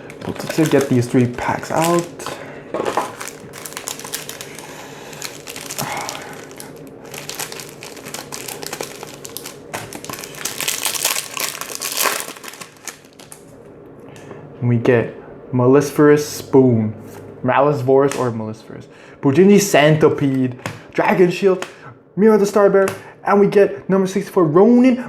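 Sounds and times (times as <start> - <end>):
foil wrappers crinkling: 0.0 - 13.6.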